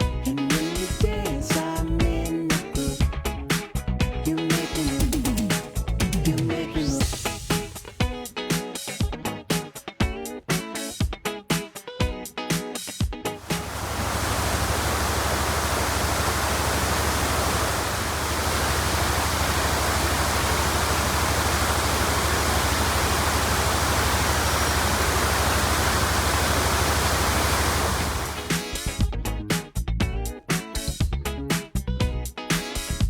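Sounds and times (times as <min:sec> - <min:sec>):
waterfall rushing: 0:13.4 - 0:28.5.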